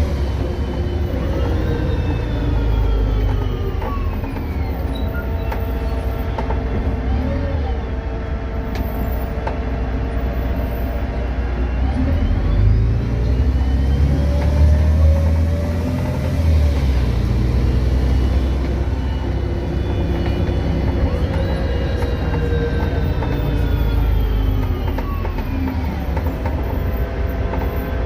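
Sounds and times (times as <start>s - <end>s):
bus drivetrain whine: 0.0s - 28.0s
bus engine rumble: 0.0s - 28.0s.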